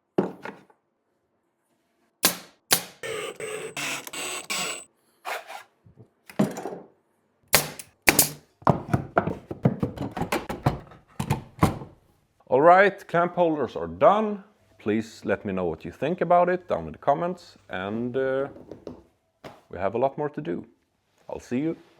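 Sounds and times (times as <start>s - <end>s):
sharp wooden knocks and clicks: 2.2s - 3.0s, 7.6s - 8.4s
power tool running: 2.2s - 4.9s.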